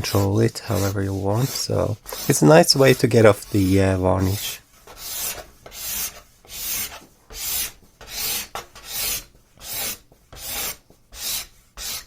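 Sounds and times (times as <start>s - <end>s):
card scraper rasping on wood: 0.0s - 3.5s, 4.2s - 12.0s.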